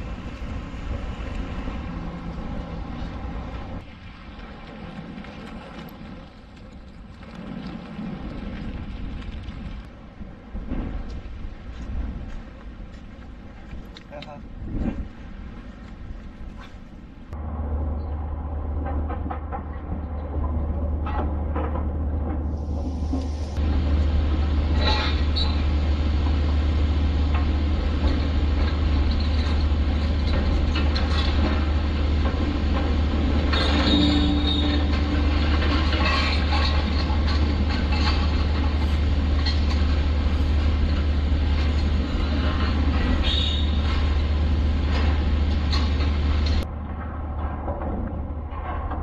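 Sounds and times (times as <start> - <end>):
strong wind buffeting microphone: 0.0 - 49.0.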